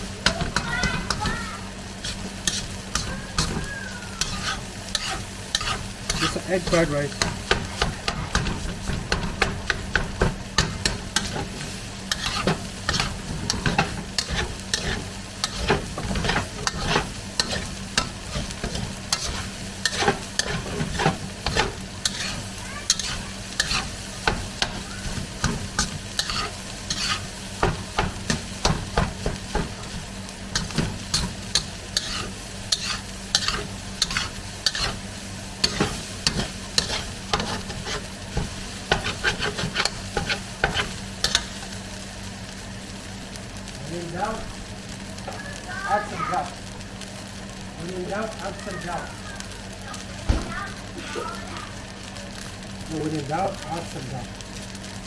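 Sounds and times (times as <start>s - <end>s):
rice sizzling in a pan: 0.0s - 55.0s
utensil scraping a pan: 2.0s - 41.6s.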